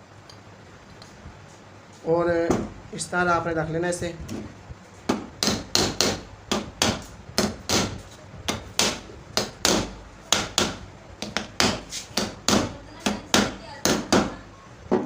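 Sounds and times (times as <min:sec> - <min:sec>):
hammer tapping on metal: 0:05.1 - 0:14.4.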